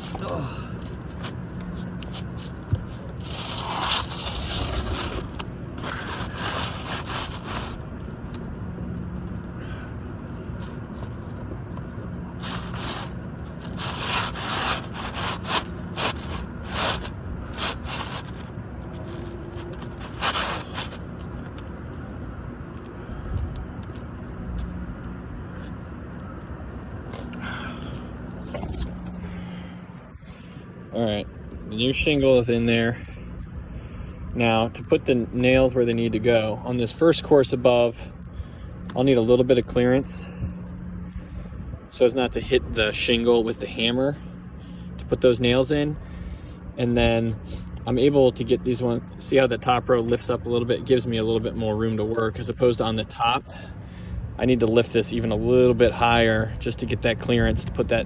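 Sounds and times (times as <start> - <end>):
shingle scraping: 0.0 - 22.3.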